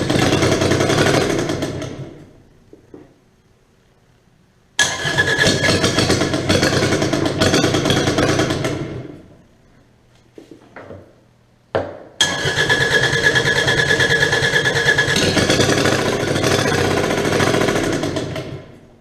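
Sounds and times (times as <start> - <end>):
diesel engine cranking with starter whine: 0.0 - 2.3, 4.8 - 9.3, 12.2 - 18.8.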